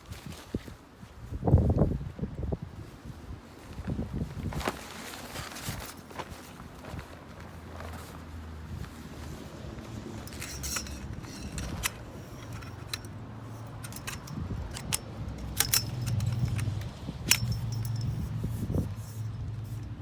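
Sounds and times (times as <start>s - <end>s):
small metal objects clinking: 10.2s - 18.4s.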